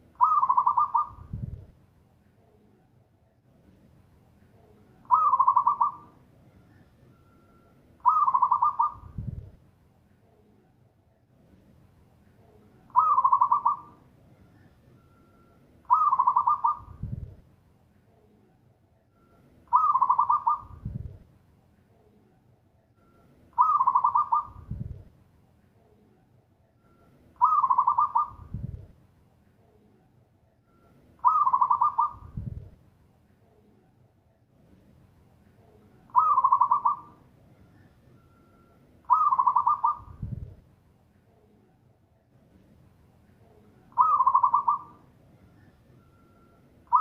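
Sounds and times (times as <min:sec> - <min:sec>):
dove trilling coo: 0:00.2 - 0:01.4, 0:05.0 - 0:06.2, 0:08.0 - 0:09.4, 0:12.9 - 0:14.0, 0:15.8 - 0:17.3, 0:19.7 - 0:21.0, 0:23.6 - 0:25.0, 0:27.4 - 0:28.8, 0:31.2 - 0:32.4, 0:36.1 - 0:38.0, 0:39.0 - 0:40.3, 0:43.9 - 0:45.8.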